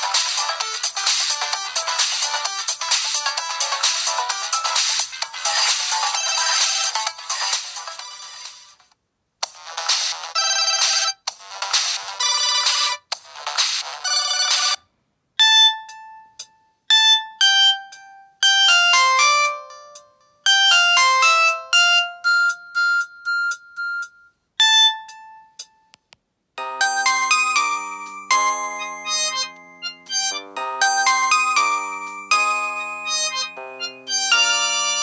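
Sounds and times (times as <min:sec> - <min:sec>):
polyphonic ringtone tune: 0:00.0 - 0:08.3, 0:15.4 - 0:25.9, 0:26.6 - 0:35.0
dense buzzy ringtone: 0:15.4 - 0:25.5, 0:26.6 - 0:35.0
electronic note melody: 0:16.9 - 0:25.5, 0:26.6 - 0:35.0.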